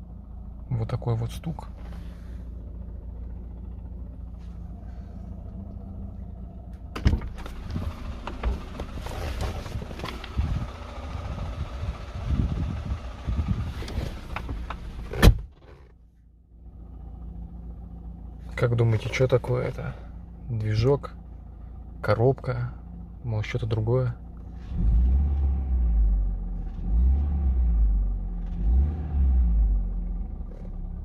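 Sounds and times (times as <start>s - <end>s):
car engine idling with knocking rattle: 0.0s - 27.1s, 29.9s - 31.0s.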